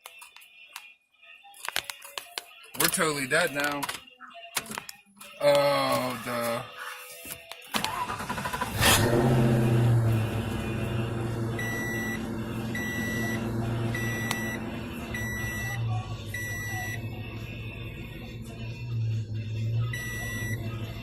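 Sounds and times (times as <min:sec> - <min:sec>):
car engine starting and idling: 0:07.8 - 0:21.0
car warning chime beeping: 0:11.0 - 0:17.2, 0:19.9 - 0:21.0.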